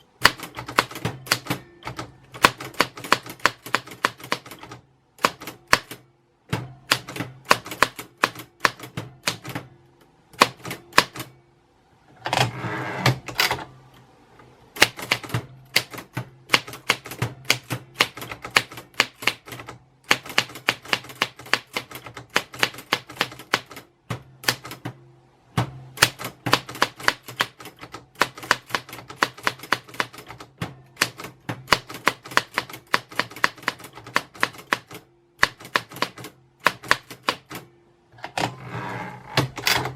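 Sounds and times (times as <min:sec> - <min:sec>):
typewriter keys clicking: 0:00.2 - 0:06.0, 0:06.9 - 0:09.6, 0:14.8 - 0:24.9, 0:26.0 - 0:37.6.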